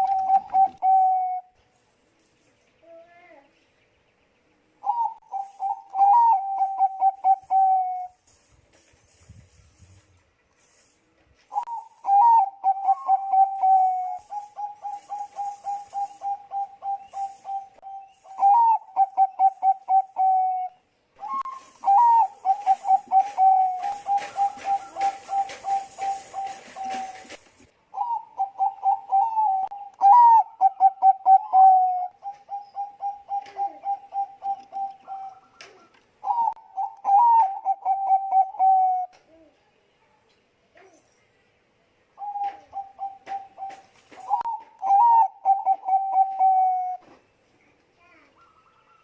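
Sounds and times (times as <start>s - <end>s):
dove cooing: 0.0s - 1.6s, 4.8s - 8.2s, 11.5s - 39.6s, 42.2s - 47.2s.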